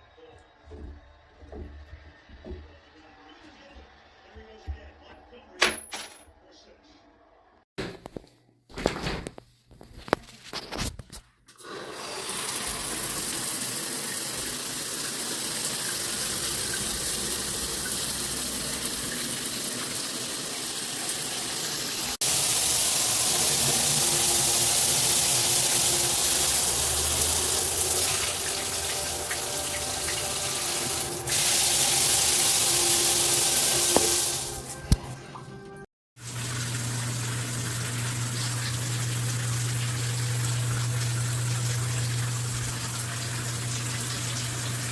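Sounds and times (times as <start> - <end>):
shower water spraying: 11.8 - 35.2, 36.2 - 44.9.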